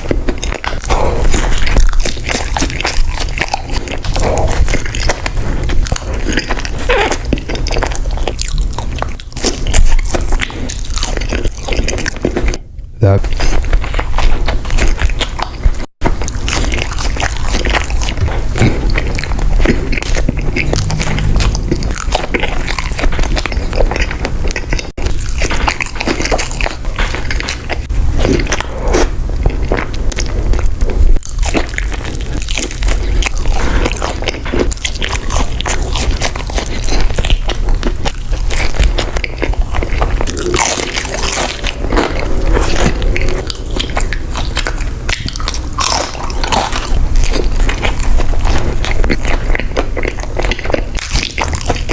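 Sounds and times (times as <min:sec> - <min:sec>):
chewing and crunching food: 0:00.0 - 0:51.9
mouth sounds: 0:12.9 - 0:13.4, 0:18.4 - 0:24.3.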